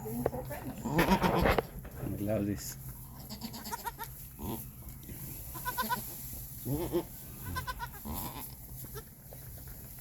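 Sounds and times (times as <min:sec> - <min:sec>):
goats bleating: 0:00.8 - 0:01.6, 0:03.1 - 0:04.6, 0:05.5 - 0:09.1.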